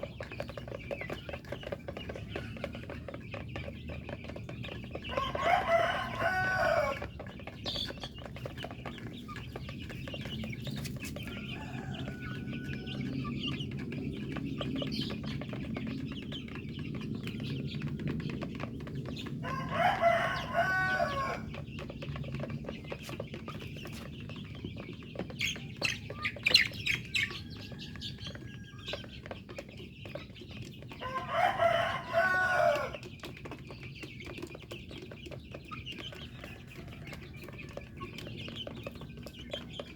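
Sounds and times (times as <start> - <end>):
chickens clucking: 0.0 - 39.9
rooster crowing: 5.1 - 7.1, 11.3 - 13.2, 19.4 - 21.5, 31.0 - 33.1.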